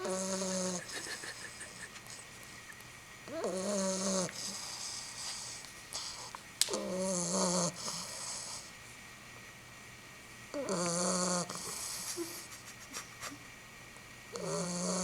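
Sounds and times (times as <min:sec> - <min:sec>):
puppy snoring: 0:00.0 - 0:02.2, 0:03.3 - 0:08.7, 0:10.5 - 0:12.4, 0:14.3 - 0:15.0.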